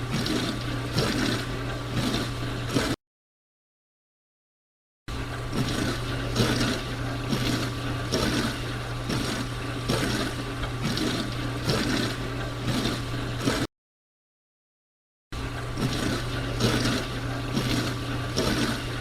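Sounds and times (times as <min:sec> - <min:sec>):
dishwasher motor and pump hum: 0:00.0 - 0:03.0, 0:05.1 - 0:13.7, 0:15.4 - 0:19.0
water spraying and swishing: 0:00.0 - 0:03.0, 0:05.2 - 0:13.7, 0:15.4 - 0:19.0.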